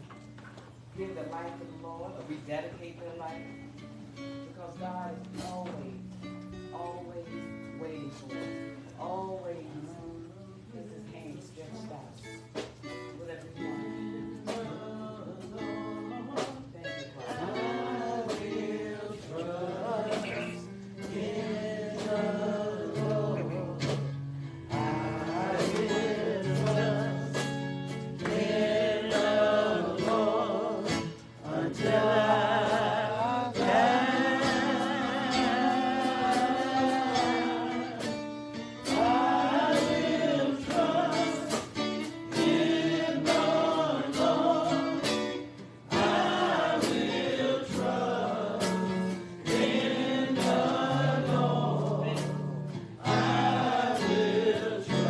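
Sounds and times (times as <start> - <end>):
choir singing gospel hymn: 6.8 - 55.0
instrumental accompaniment: 12.2 - 55.0.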